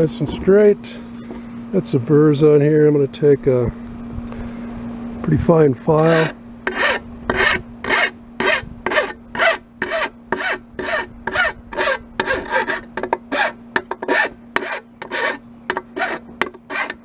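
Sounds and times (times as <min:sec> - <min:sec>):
file rasping on metal edge: 0:06.0 - 0:17.0.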